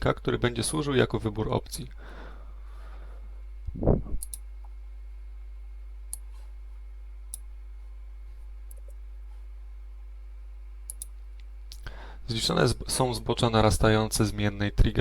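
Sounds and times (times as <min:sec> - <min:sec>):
steady low hum: 0:00.0 - 0:15.0
computer mouse clicks: 0:04.2 - 0:04.4, 0:08.7 - 0:09.0, 0:10.9 - 0:11.2.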